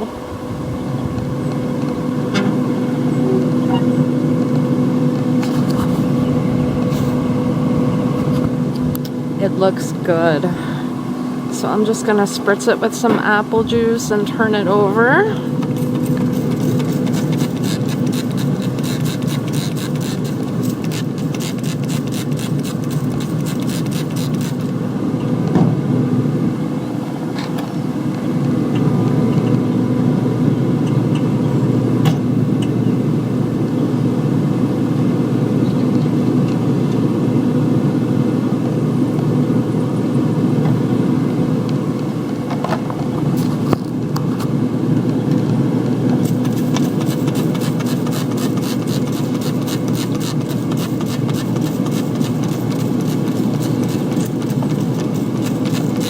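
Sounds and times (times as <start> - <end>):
motor humming: 0.0 - 25.4, 40.9 - 56.0
spray bottle spritzes: 16.3 - 24.7, 46.2 - 56.0.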